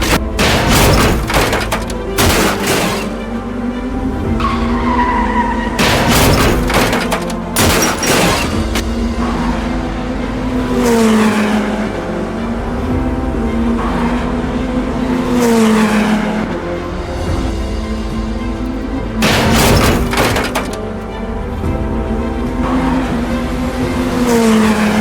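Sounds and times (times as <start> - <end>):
loud crash bangs: 0.0 - 3.4, 4.3 - 11.8, 19.2 - 20.9
race car engines: 0.0 - 25.0
tire squeals: 0.0 - 25.0.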